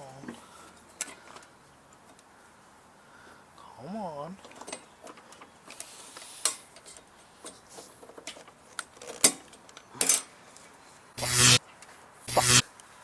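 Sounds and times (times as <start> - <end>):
brief whir: 11.2 - 11.6, 12.3 - 12.6.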